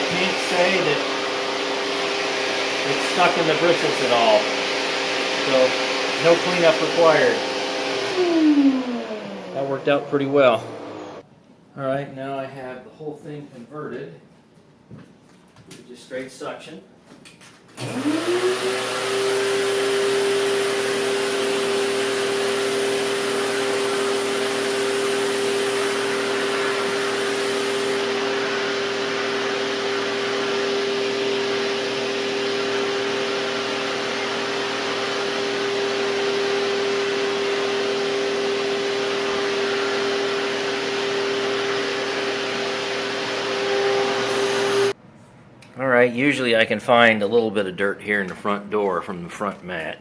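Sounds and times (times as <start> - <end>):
vacuum cleaner motor whining: 0.0 - 11.2, 17.8 - 45.0.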